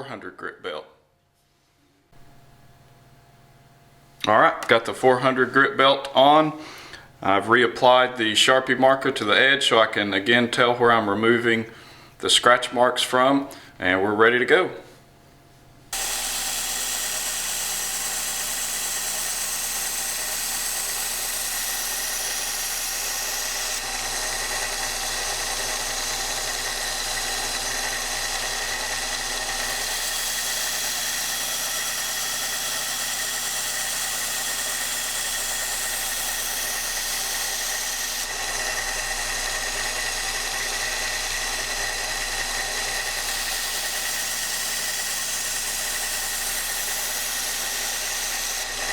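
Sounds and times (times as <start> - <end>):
belt sander running: 15.9 - 48.9.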